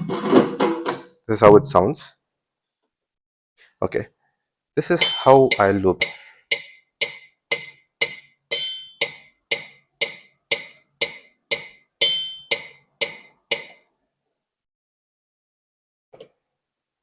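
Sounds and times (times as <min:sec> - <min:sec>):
sampled drum strikes: 0:05.0 - 0:13.7.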